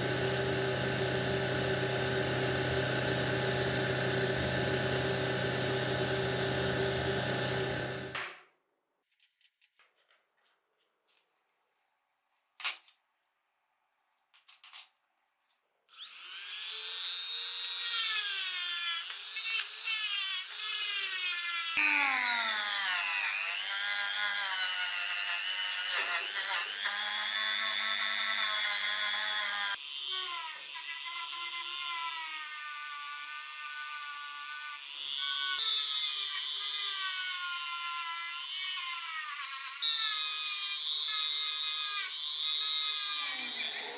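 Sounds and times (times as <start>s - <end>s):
electric power tool whining: 0.0s - 8.3s, 16.0s - 30.4s, 34.7s - 43.9s.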